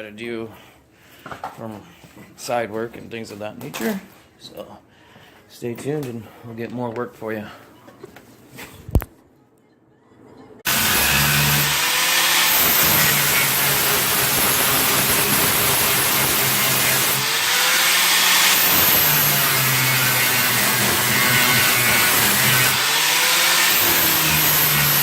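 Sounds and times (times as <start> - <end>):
angle grinder grinding metal: 10.7 - 25.0.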